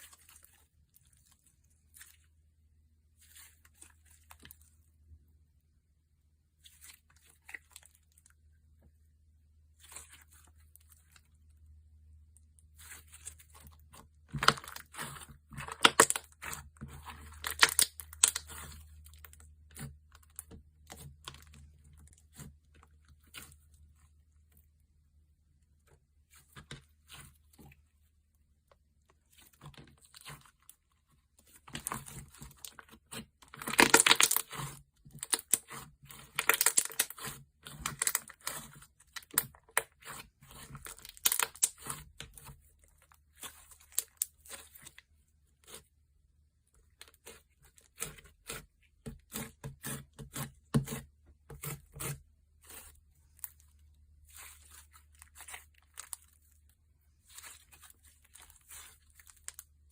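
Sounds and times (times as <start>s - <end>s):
slime crackling and tearing: 12.6s - 23.8s, 29.2s - 45.8s, 51.6s - 59.9s.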